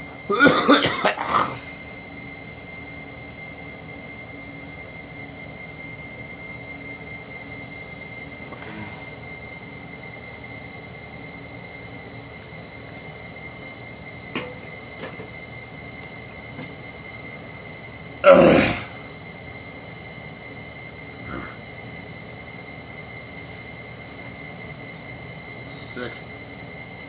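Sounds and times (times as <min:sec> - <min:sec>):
steady hum with high whine: 0:00.0 - 0:27.0
person coughing: 0:00.3 - 0:01.8, 0:18.2 - 0:19.0, 0:21.3 - 0:21.6.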